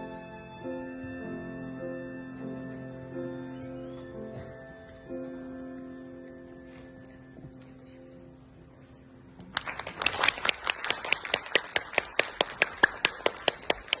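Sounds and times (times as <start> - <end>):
applause: 9.4 - 14.0.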